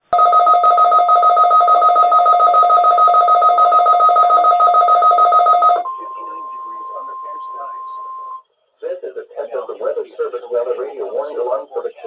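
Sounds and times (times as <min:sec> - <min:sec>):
weather alert alarm warble: 0:00.1 - 0:08.4.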